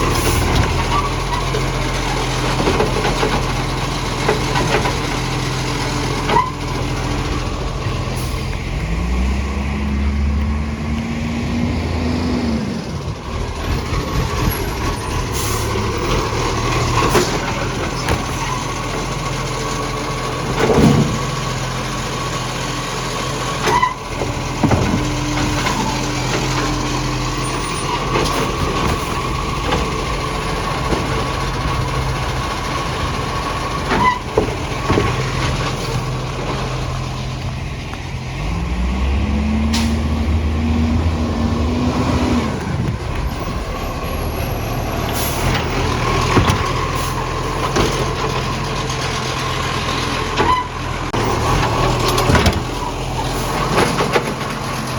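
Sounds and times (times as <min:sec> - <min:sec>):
truck diesel engine revving: 0:00.0 - 0:54.9.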